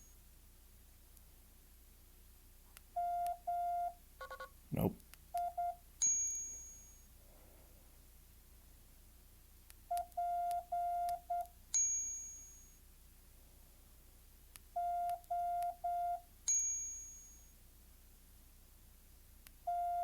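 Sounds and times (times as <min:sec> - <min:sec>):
bell-like chime: 0:06.0 - 0:07.1, 0:11.8 - 0:12.8, 0:16.5 - 0:17.5
morse code beeps: 0:19.7 - 0:20.0.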